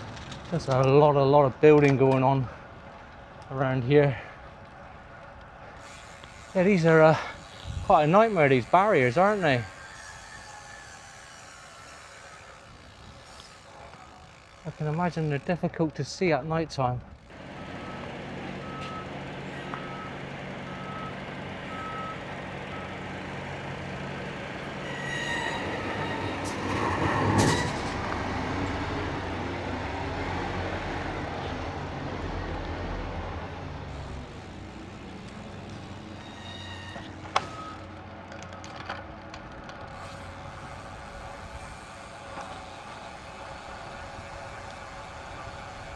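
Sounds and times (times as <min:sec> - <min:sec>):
vehicle passing: 0:00.0 - 0:16.4, 0:17.1 - 0:45.9
engine hum: 0:00.0 - 0:45.9
reversing alarm beeping: 0:17.4 - 0:23.2, 0:36.2 - 0:37.9.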